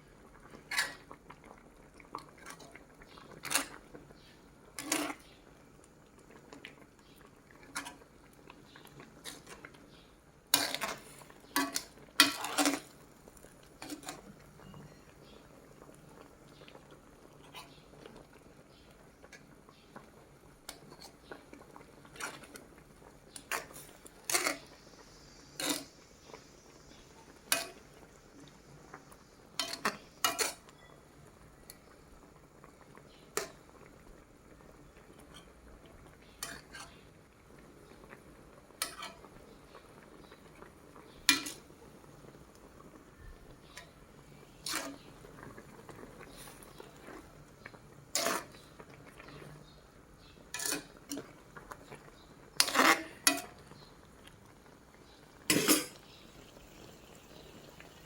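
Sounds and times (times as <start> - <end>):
cutlery clinking against plates: 50.5 - 51.2, 52.6 - 53.5, 55.5 - 56.0.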